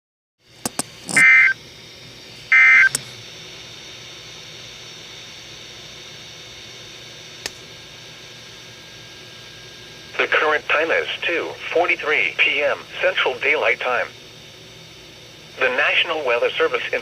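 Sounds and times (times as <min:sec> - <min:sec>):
shrill digital data tones: 0:01.1 - 0:01.6
steady radio hiss: 0:09.6 - 0:14.3, 0:15.4 - 0:17.0.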